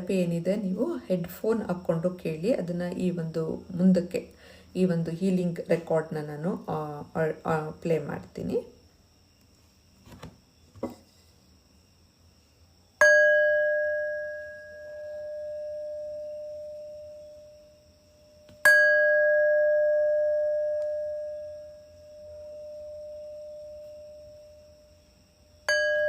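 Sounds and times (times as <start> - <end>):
singing bowl ringing: 12.9 - 26.0.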